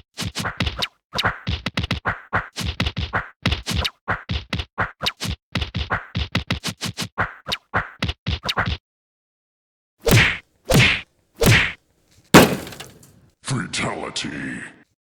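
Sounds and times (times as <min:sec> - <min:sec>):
punch sound effects: 0:12.4 - 0:13.1.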